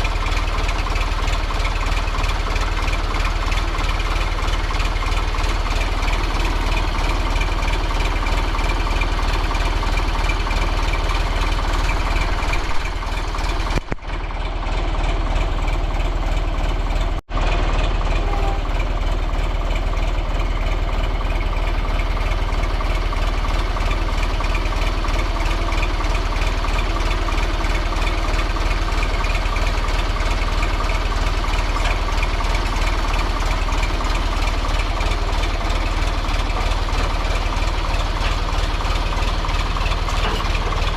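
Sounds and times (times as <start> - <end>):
engine running: 0.0 - 40.9.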